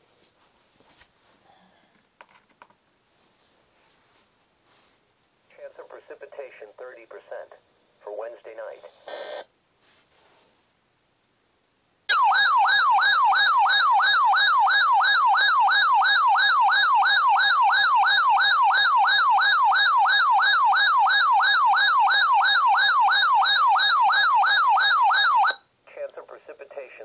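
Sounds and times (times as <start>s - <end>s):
electronic yelp siren: 12.1s - 25.6s.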